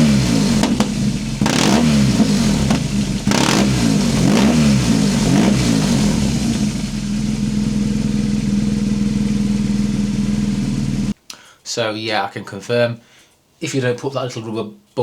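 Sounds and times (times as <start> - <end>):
motorcycle engine revving and idling: 0.0 - 11.2.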